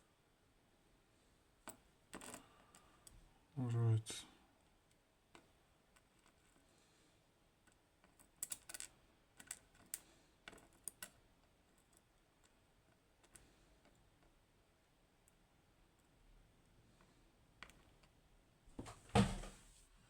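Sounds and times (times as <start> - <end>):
small metal pins clicking: 7.6 - 14.4.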